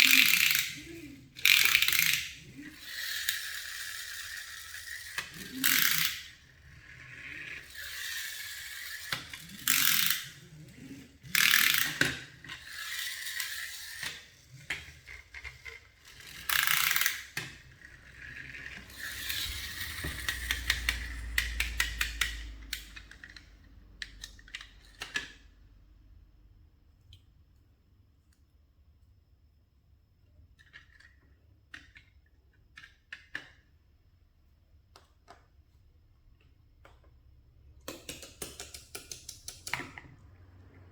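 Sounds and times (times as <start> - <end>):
rapid ratchet-like clicks: 0.0 - 23.5.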